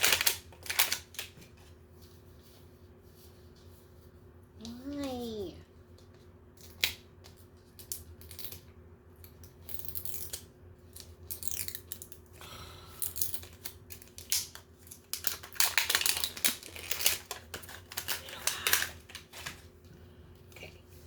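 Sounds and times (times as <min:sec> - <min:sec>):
plastic packaging cut and torn: 0:00.0 - 0:01.3, 0:13.0 - 0:19.6.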